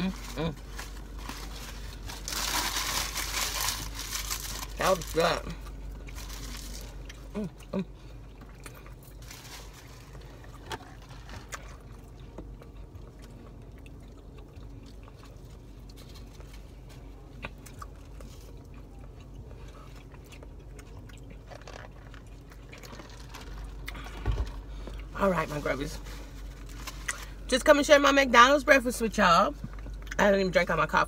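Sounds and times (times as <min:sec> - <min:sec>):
low hum in a car: 0:00.0 - 0:31.0
chewing and mouth sounds: 0:05.5 - 0:25.2.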